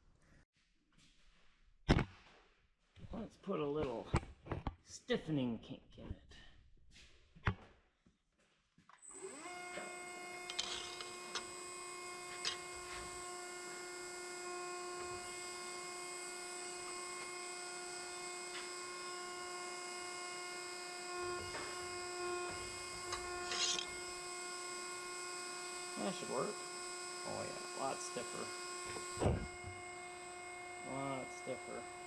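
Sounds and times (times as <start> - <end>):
electric machine humming with whine: 9.0 - 32.0.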